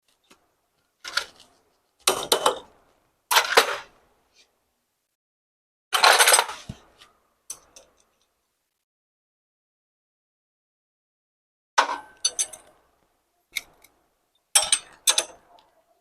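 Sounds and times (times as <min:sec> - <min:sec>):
metal tools clinking on a workbench: 0:06.0 - 0:06.7, 0:11.8 - 0:12.8, 0:14.6 - 0:15.4.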